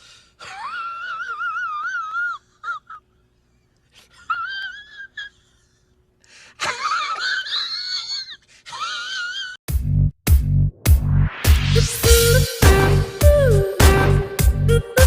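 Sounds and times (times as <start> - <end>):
high-pitched wailing cry: 0.6 - 3.0, 7.2 - 9.6.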